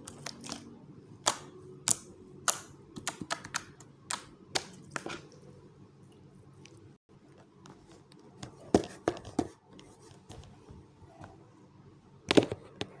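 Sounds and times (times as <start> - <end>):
low steady hum: 0.0 - 13.0.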